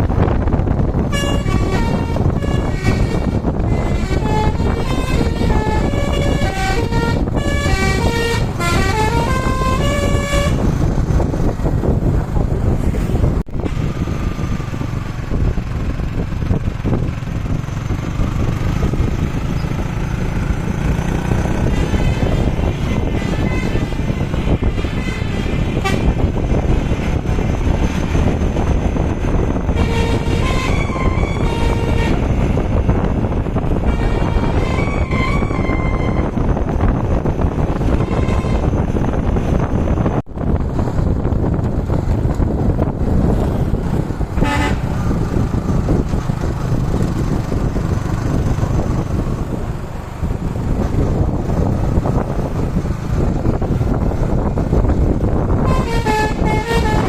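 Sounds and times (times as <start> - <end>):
bus and road traffic: 0.0 - 57.0
wind on microphone: 0.0 - 57.0
musical bus air horn: 1.0 - 10.7, 21.6 - 26.6, 28.6 - 38.9, 44.4 - 45.2, 55.3 - 57.0.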